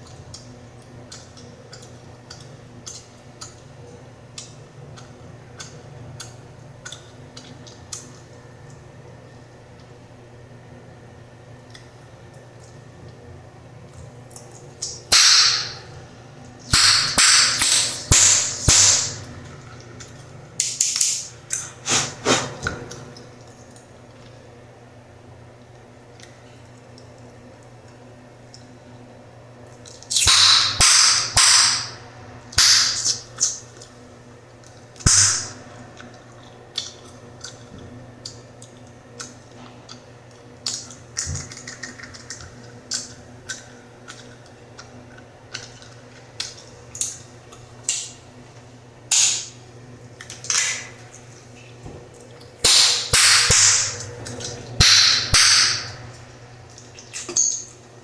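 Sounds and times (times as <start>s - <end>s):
bubblegum snapping and popping: 35.1s - 35.6s.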